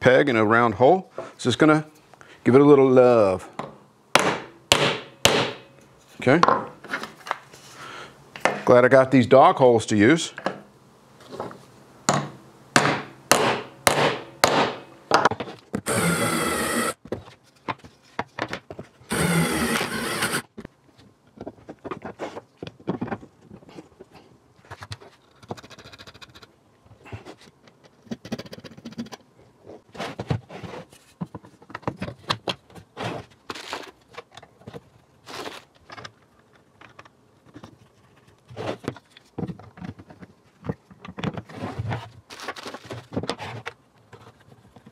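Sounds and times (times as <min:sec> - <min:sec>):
hammer striking bolts: 0:03.6 - 0:05.7, 0:12.1 - 0:15.3
parts handled on workbench: 0:05.9 - 0:07.8.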